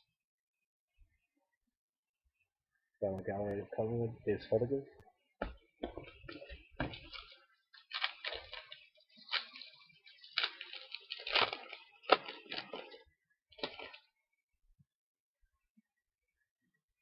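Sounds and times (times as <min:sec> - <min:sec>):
foil wrapper crinkling and tearing: 0:06.4 - 0:14.1.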